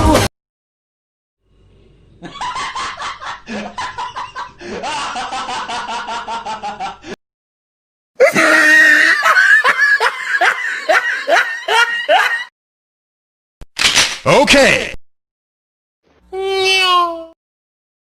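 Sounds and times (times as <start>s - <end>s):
loud ha ha laugh: 2.2s - 7.1s, 8.2s - 12.5s
snickering laugh: 2.2s - 7.1s, 8.2s - 12.5s.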